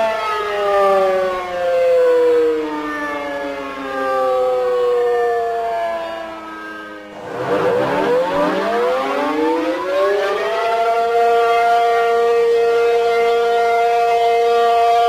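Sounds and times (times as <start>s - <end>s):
siren wailing: 0.0s - 15.0s.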